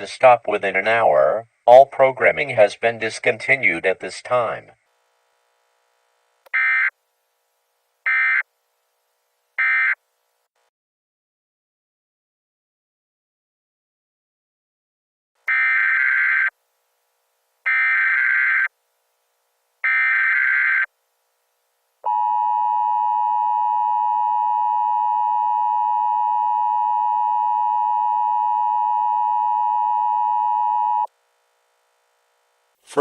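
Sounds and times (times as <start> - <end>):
two-tone attention signal: 22.1 - 31.1.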